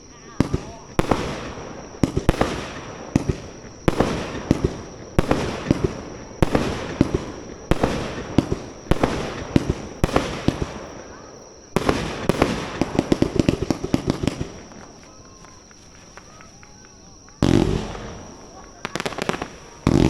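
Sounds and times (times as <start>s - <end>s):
fireworks bursting: 0.0s - 20.0s.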